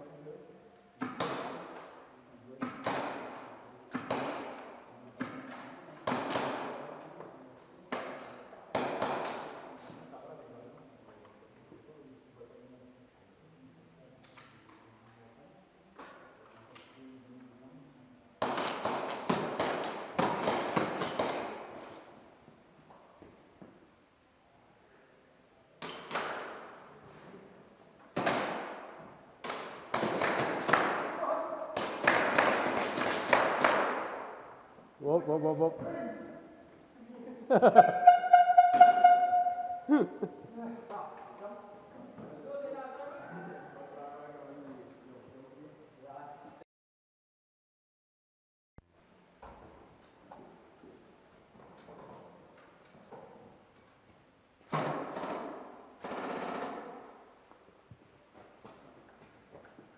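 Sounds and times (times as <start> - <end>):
airsoft gun shots echoing: 31.8 - 34.5.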